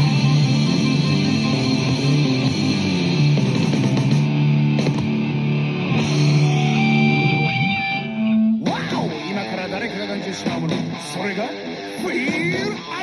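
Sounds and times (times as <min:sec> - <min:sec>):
rock music with guitar: 0:00.0 - 0:13.0
rising sliding guitar note: 0:05.1 - 0:09.3.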